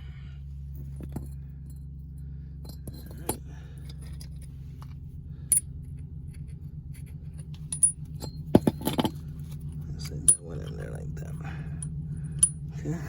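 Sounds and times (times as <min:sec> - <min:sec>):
steady low hum: 0:00.0 - 0:13.0
metal bolts and tools clinking: 0:02.6 - 0:05.7, 0:07.2 - 0:10.9.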